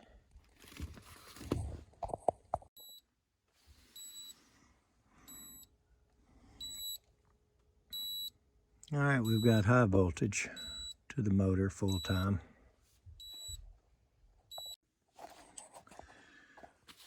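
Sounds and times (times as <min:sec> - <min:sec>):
rustling and handling noise: 0:00.3 - 0:02.6, 0:14.6 - 0:17.0.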